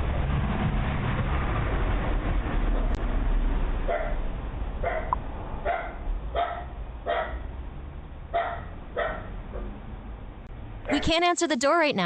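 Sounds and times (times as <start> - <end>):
dog barking: 3.9 - 4.2, 4.8 - 7.5, 8.3 - 9.7.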